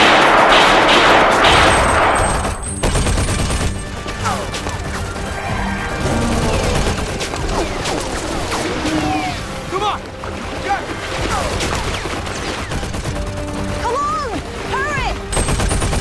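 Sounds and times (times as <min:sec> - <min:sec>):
crackle of rapid pops: 0:00.0 - 0:09.0, 0:10.1 - 0:16.0
harsh monster roar: 0:05.4 - 0:07.2.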